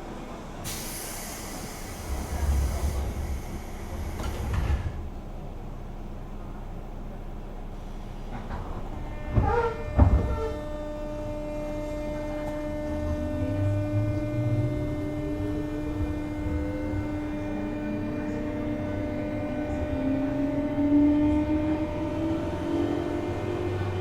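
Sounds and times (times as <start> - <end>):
electric train hum: 0.0 - 24.0
rising motor whine: 9.0 - 24.0.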